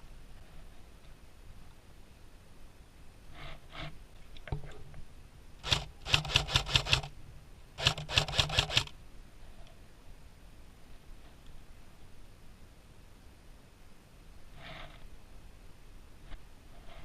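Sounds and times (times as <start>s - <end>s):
airsoft rifle shots: 5.6s - 7.1s, 7.8s - 8.9s.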